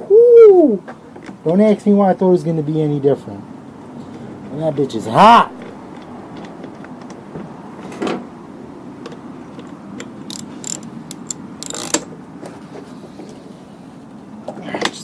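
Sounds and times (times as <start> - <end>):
metallic clicks and scrapes: 9.6 - 13.4
socket wrench ratcheting: 10.0 - 12.1.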